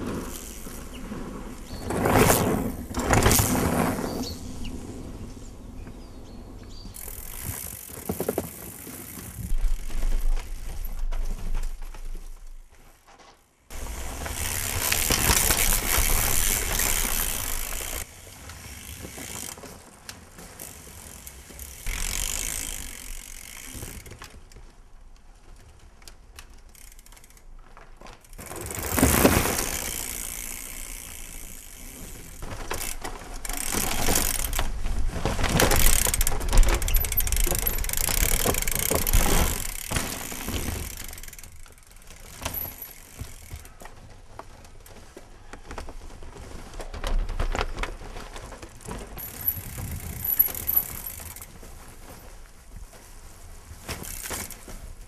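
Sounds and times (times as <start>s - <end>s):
bicycle freewheel ratchet clicking: 0.3s - 1.0s, 7.0s - 10.1s, 13.8s - 19.6s, 20.6s - 24.2s, 26.7s - 27.4s, 28.2s - 34.7s, 35.7s - 43.7s, 49.2s - 51.5s, 54.0s - 54.6s.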